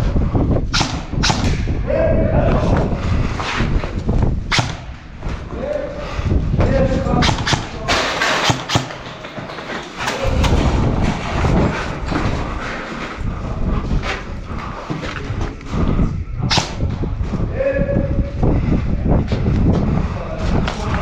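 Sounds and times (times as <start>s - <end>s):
rumbling movement noise: 0.0s - 21.0s
airsoft guns firing: 7.3s - 10.7s.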